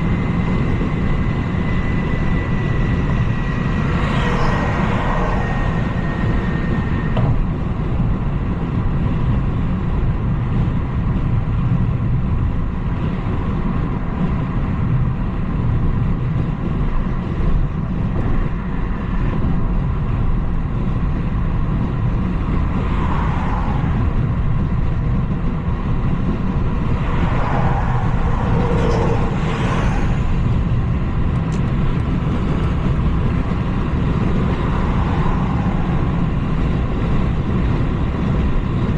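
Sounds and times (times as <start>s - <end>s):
car engine and road noise rumble: 0.0s - 38.9s.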